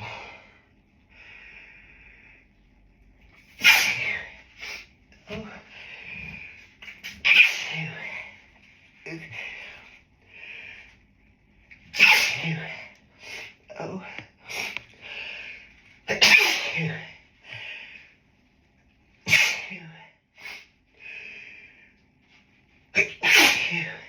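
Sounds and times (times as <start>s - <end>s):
person sneezing: 3.6s - 4.4s, 7.0s - 8.2s, 12.0s - 12.9s, 16.1s - 17.1s, 19.3s - 19.9s, 23.0s - 24.0s.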